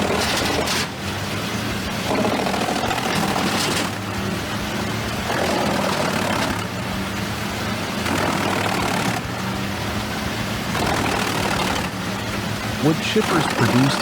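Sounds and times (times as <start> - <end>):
wood chipper engine running: 0.0 - 14.0.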